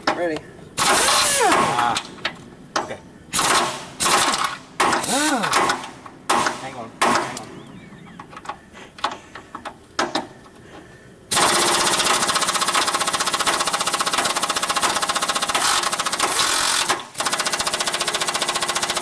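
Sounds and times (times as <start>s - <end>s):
impact wrench hammering: 2.8s - 7.4s.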